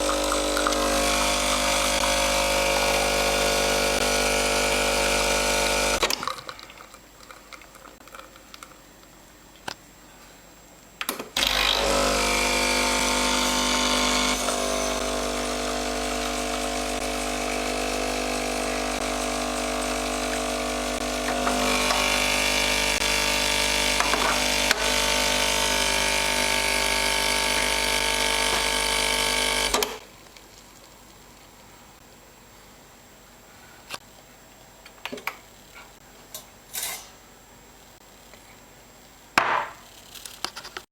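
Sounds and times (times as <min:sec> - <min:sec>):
espresso machine humming and hissing: 0:00.0 - 0:06.1, 0:11.4 - 0:30.0.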